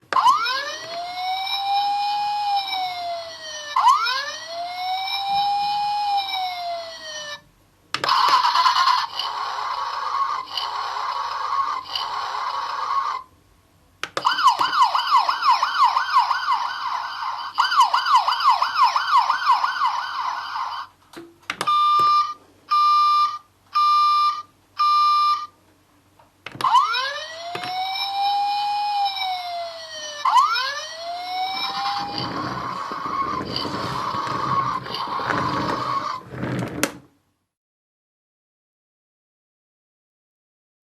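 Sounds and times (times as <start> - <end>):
fast warbling siren: 0.2 - 7.4, 8.1 - 13.2, 14.2 - 20.9, 26.6 - 36.2
sliding whistle-like tones: 31.2 - 36.2
rough noisy electronic effect: 31.6 - 36.8.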